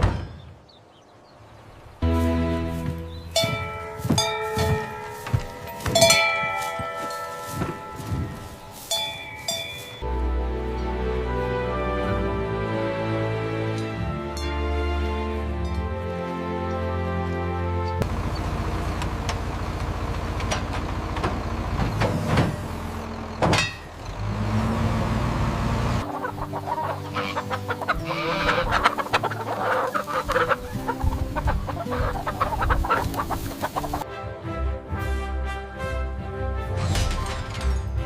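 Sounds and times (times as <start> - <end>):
steady held notes: 2.0 - 19.5
chickens clucking and squawking: 24.6 - 34.0.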